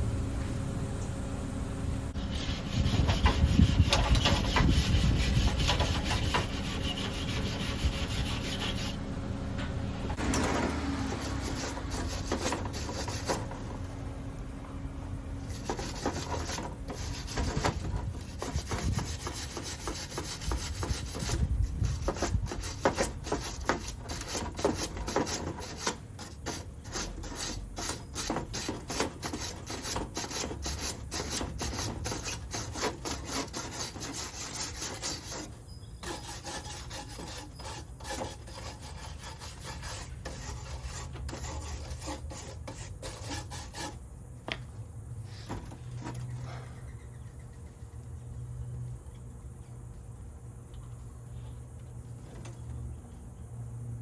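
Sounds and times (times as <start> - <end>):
filing on small metal parts: 2.2 - 9.0, 10.0 - 14.0, 15.4 - 44.0, 45.3 - 48.4.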